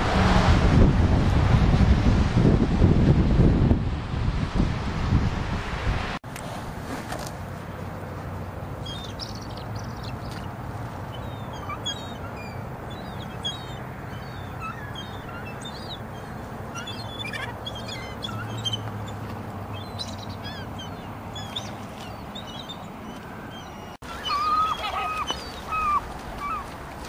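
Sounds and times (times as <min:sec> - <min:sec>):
many birds chirping: 0:08.8 - 0:26.8.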